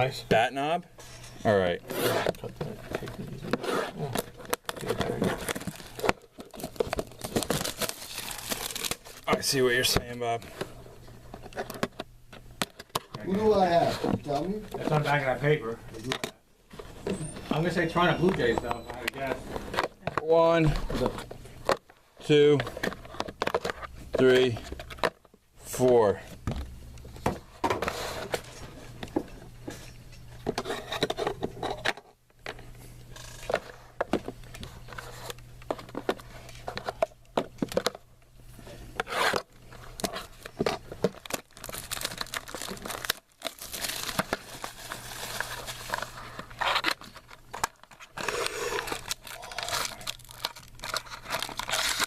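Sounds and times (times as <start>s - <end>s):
low electrical hum: 0.0s - 52.0s
card packs crinkling and tearing: 1.6s - 10.5s, 17.5s - 26.2s, 39.0s - 52.0s.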